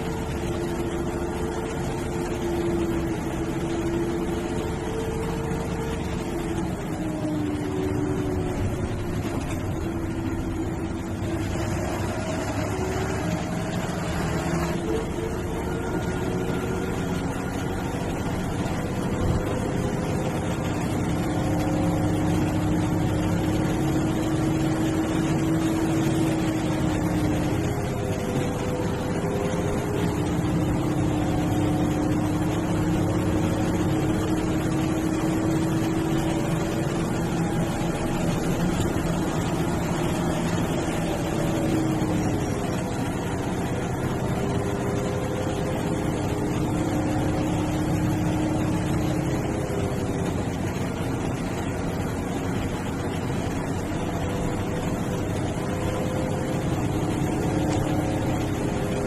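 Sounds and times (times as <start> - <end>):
bus diesel engine running: 0.0 - 59.0
road noise: 0.0 - 59.0.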